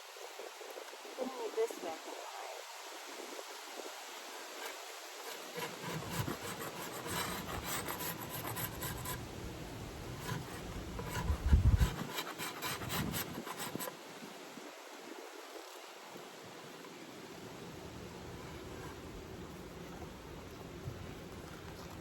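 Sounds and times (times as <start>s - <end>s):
wooden frame scraping and clicking: 4.6s - 9.2s.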